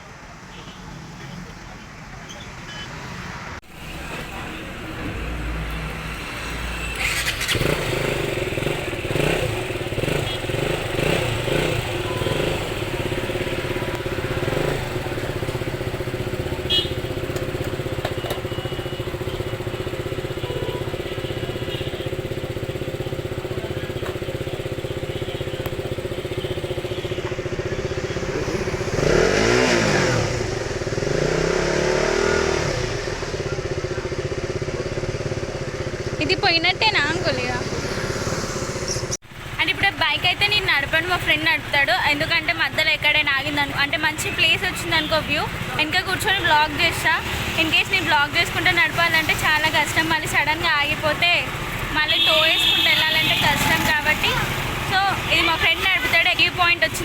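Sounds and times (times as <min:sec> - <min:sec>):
motorcycle engine running: 0:03.7 - 0:57.0
motorcycle throttle revving: 0:03.7 - 0:57.0.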